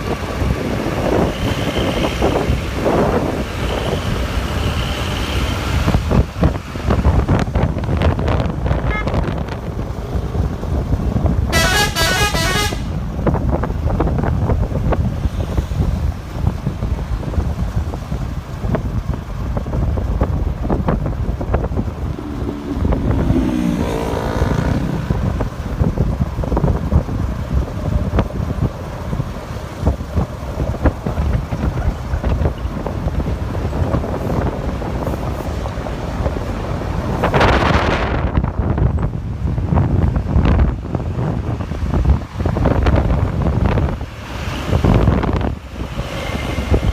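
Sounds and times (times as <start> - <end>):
vehicle noise: 0.0 - 46.9
wind rumbling on microphone: 0.0 - 46.9
bus multi-tone horn melody: 8.8 - 9.4, 11.5 - 13.1
low rumble: 15.8 - 35.3.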